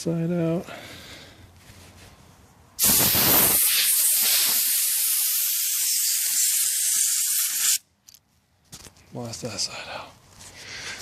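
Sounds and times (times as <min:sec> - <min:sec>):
compressed air blow gun hissing: 0:02.8 - 0:07.8.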